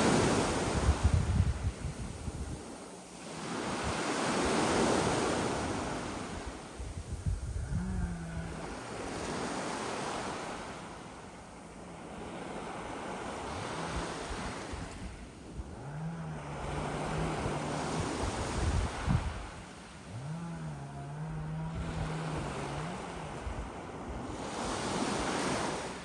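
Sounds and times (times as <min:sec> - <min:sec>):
waves washing on pebble beach: 0:00.0 - 0:07.5
wind buffeting microphone: 0:00.0 - 0:10.9, 0:12.2 - 0:26.0.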